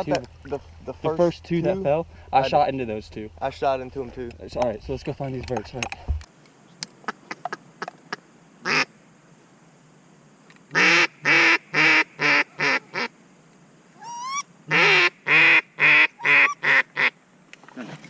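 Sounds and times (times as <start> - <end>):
duck quacking: 10.7 - 13.1, 14.0 - 17.2.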